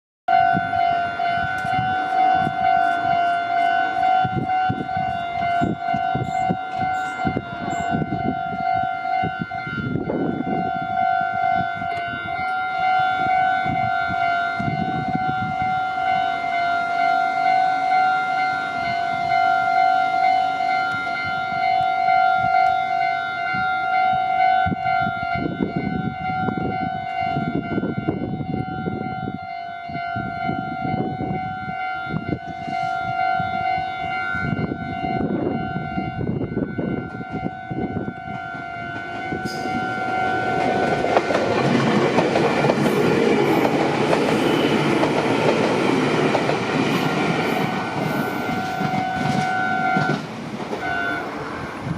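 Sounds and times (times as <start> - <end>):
level-crossing warning bell: 0.3 - 51.9
train rumbling: 0.3 - 51.9
train wheels clattering: 38.3 - 51.2.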